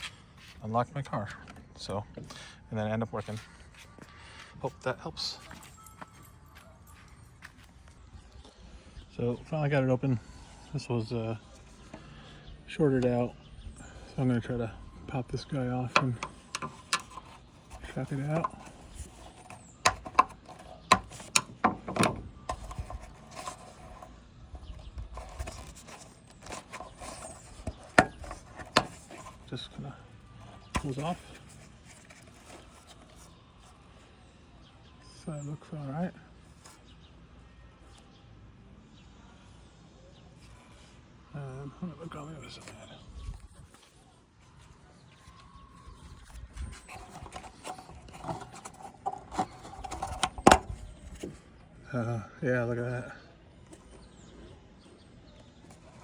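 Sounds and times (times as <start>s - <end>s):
hands handling plastic trim: 15.8s - 24.1s, 24.8s - 29.7s, 30.4s - 33.3s, 46.7s - 51.3s
rubber scraping and rubbing: 15.9s - 29.5s, 46.2s - 51.3s.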